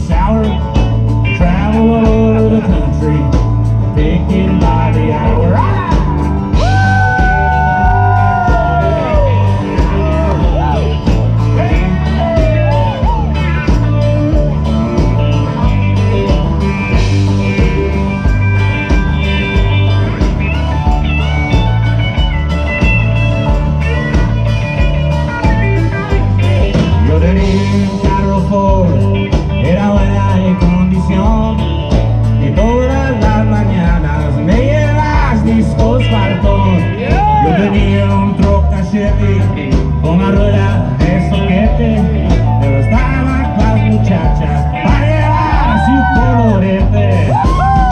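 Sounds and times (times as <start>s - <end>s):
music with bass beat: 0.0s - 47.9s.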